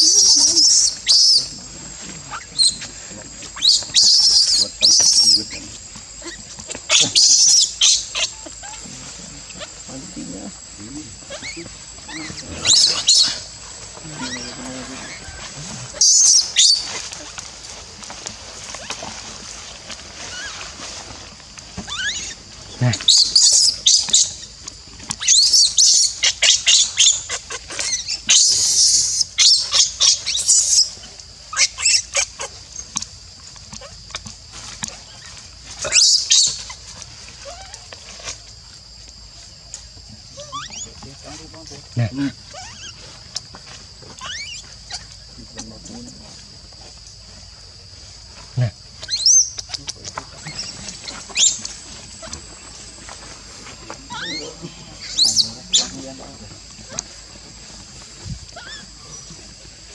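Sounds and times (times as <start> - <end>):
baby monkey crying: 0.0 - 1.5, 3.6 - 5.6, 6.2 - 8.9, 11.2 - 17.4, 20.3 - 20.6, 21.9 - 24.5, 25.2 - 32.6, 35.8 - 36.8, 40.4 - 41.0, 42.0 - 43.4, 44.1 - 45.2, 49.0 - 56.0, 56.8 - 57.2, 58.3 - 59.3
steady high hiss: 0.0 - 59.9.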